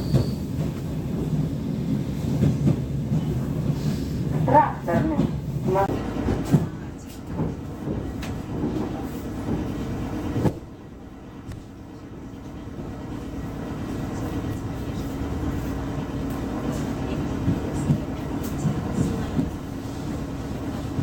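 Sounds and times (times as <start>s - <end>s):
train rumbling on rails: 0.0s - 21.0s.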